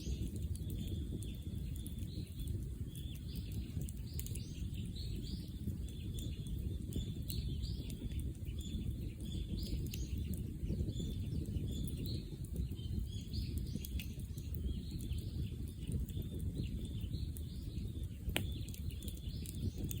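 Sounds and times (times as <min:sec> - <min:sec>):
birds chirping: 0:00.0 - 0:20.0
bonfire crackling: 0:00.0 - 0:20.0
fire popping: 0:00.0 - 0:20.0.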